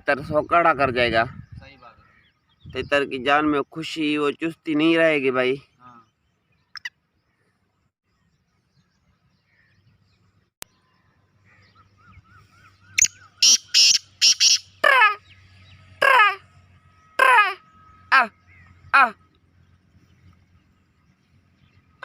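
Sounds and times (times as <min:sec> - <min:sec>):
small bird chirps: 0:05.7 - 0:07.5, 0:08.2 - 0:16.0
bird harsh falling calls: 0:10.7 - 0:20.5.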